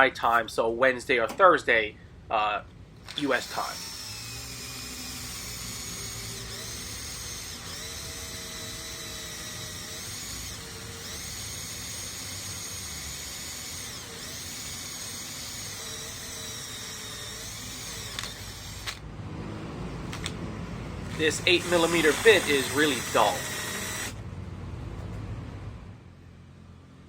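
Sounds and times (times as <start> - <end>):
electric drill boring into steel: 3.0 - 19.0, 21.1 - 24.2.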